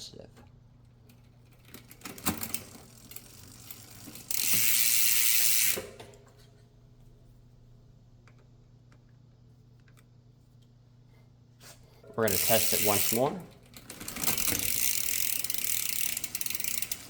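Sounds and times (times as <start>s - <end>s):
bicycle freehub ratcheting: 1.5s - 6.0s, 12.2s - 17.0s.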